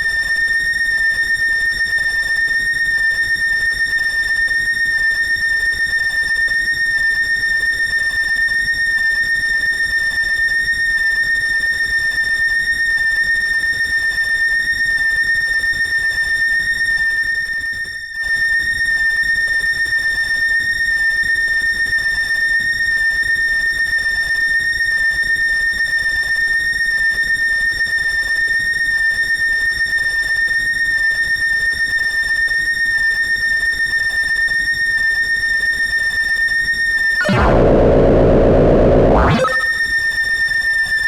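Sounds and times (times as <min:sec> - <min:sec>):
synthesizer high-pitched whistling tone: 0:37.2 - 0:39.8.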